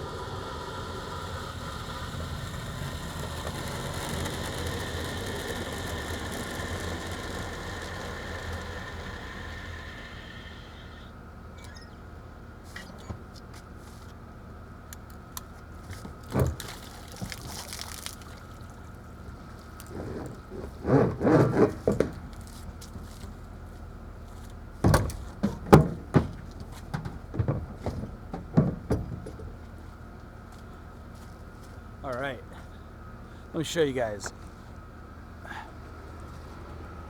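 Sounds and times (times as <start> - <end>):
knocks and clunks: 15.4 - 17.5, 19.7 - 23.4, 24.4 - 30.0
water splashing and dripping: 16.4 - 19.9.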